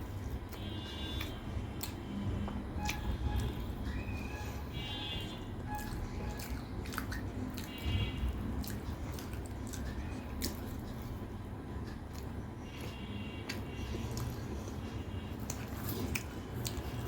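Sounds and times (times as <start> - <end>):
person chewing: 0.0 - 17.0
wet mouth clicks and smacks: 5.8 - 7.9.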